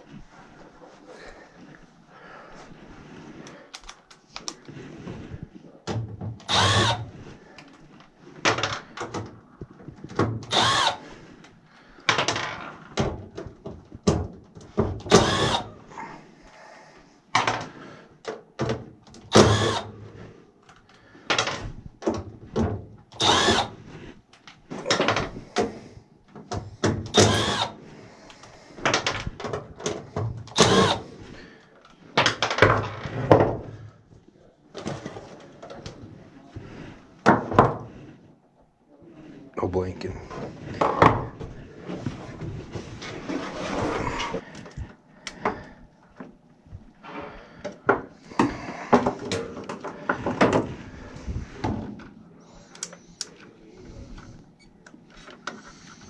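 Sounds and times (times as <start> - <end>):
cordless drill bursts: 6.5 - 7.1, 10.5 - 11.0, 15.1 - 15.7, 19.3 - 19.9, 23.2 - 23.8, 27.1 - 27.8, 30.5 - 31.1.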